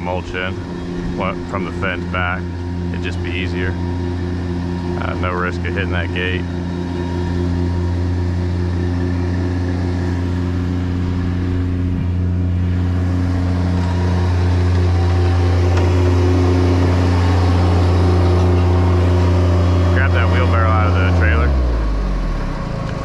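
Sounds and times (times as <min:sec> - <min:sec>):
engine idling: 0:00.0 - 0:23.0.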